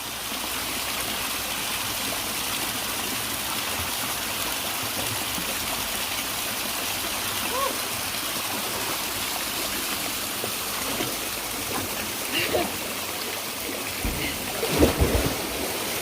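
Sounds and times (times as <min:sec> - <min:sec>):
flowing river water: 0:00.0 - 0:16.0.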